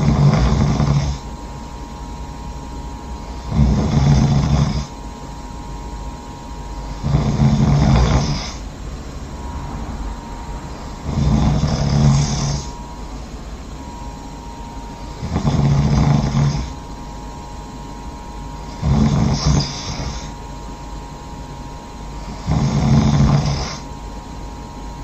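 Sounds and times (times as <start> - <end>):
person snoring loudly: 0.0 - 1.3, 3.2 - 5.0, 6.8 - 8.7, 9.4 - 13.2, 14.9 - 16.9, 18.6 - 20.4, 22.2 - 23.9.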